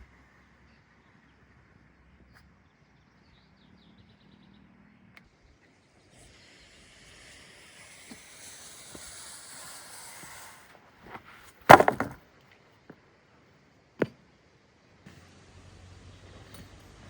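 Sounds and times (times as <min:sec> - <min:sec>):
hiss: 0:06.1 - 0:10.7, 0:15.1 - 0:17.0
loud wooden knock with clatter: 0:11.1 - 0:12.2.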